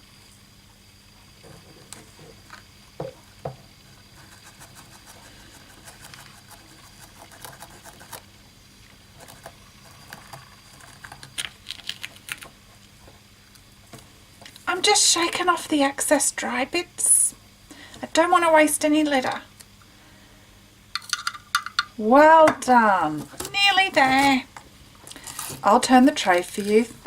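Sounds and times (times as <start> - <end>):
patter of grains: 0.0 - 14.7, 22.8 - 27.0
plastic scoop scraping litter granules: 25.1 - 27.0.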